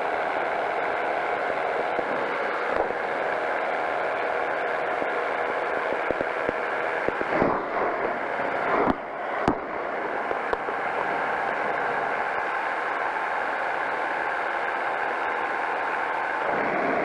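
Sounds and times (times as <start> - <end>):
engine and propeller droning: 0.0 - 17.0
wind noise: 5.0 - 13.1, 16.4 - 17.0
short sharp pops: 5.9 - 11.4.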